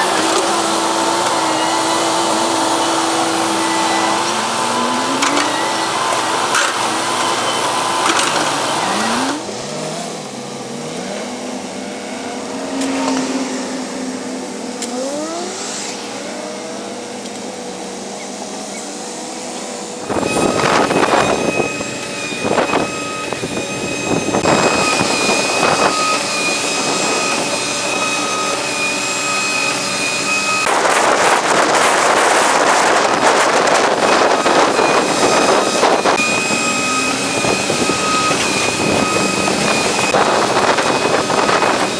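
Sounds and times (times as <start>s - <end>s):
excavator engines revving: 0.0s - 41.9s
excavator bucket clanking: 4.4s - 9.2s
steady high whine: 13.3s - 41.9s.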